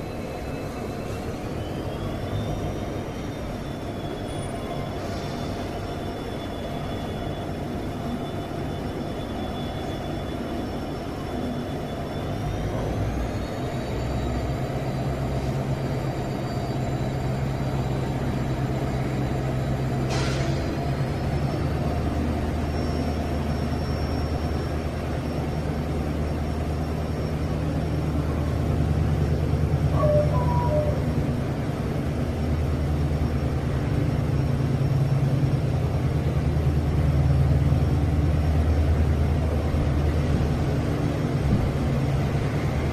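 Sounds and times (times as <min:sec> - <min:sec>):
diesel locomotive engine whining: 0:00.0 - 0:42.9.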